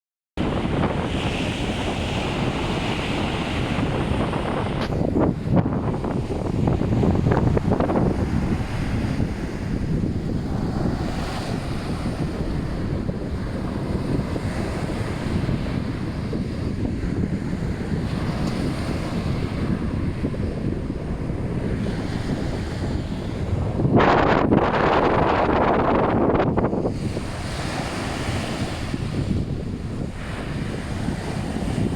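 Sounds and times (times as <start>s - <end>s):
waves washing: 0.4s - 31.9s
wind buffeting microphone: 0.4s - 31.9s.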